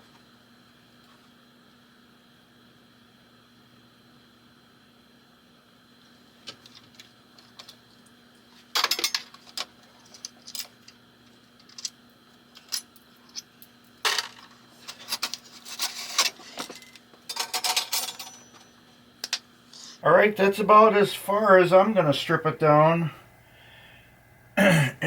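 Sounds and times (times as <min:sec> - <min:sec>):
small metal parts clinking: 0:08.7 - 0:11.0, 0:11.6 - 0:19.4.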